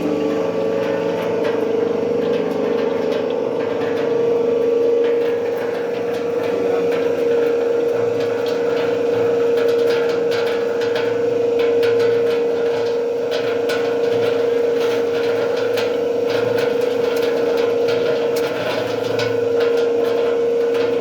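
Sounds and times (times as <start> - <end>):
machine humming: 0.0 - 21.0.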